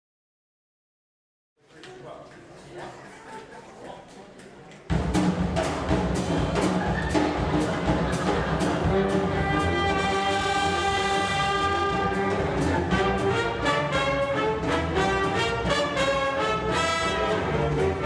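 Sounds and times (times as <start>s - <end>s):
big-band jazz ensemble: 4.9s - 18.0s
drums keeping steady beat: 4.9s - 18.0s
horns playing chords: 6.2s - 18.0s.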